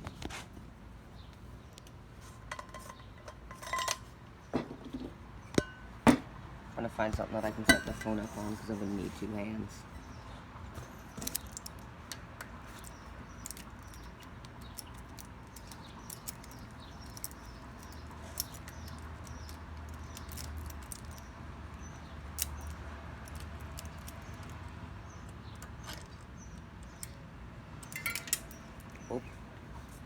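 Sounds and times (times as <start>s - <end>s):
clicks taps and rattles of handling: 10.8s - 27.2s.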